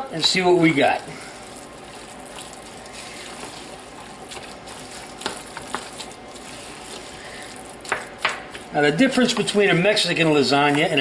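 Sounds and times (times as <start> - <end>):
spoon stirring food in a pan: 1.1 - 9.7.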